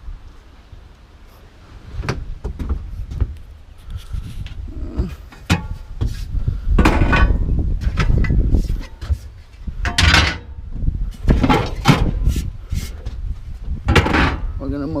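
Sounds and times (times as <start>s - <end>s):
metal items clanking and rattling: 6.8s - 9.1s, 9.8s - 10.5s, 11.3s - 12.2s.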